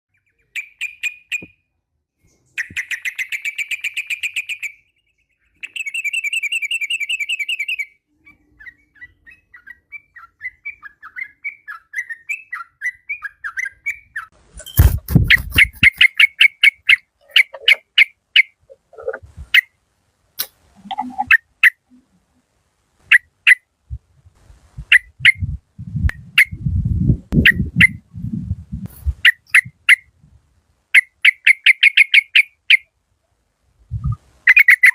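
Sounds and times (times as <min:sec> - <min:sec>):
bird trilling and chirping: 0:05.6 - 0:19.7, 0:20.8 - 0:21.9, 0:24.8 - 0:25.5, 0:34.0 - 0:34.9
low rumbling noise: 0:23.8 - 0:30.6, 0:33.8 - 0:34.4.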